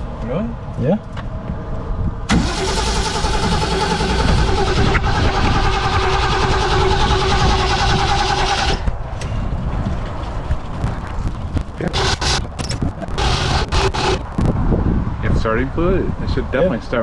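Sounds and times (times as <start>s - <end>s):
starter motor cranking engine: 2.3s - 8.9s, 10.8s - 14.5s.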